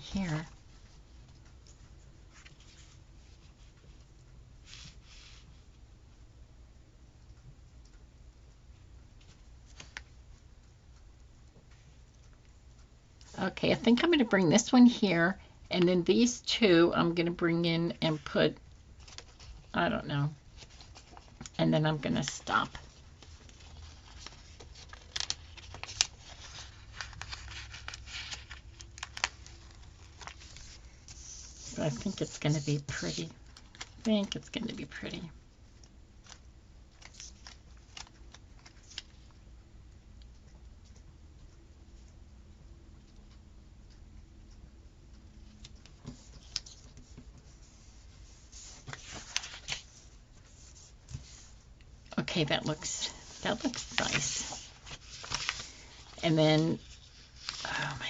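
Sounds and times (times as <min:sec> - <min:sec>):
paper rustling: 0:19.0 - 0:19.7, 0:20.5 - 0:34.8, 0:37.0 - 0:39.3, 0:46.0 - 0:51.6, 0:52.2 - 0:58.0.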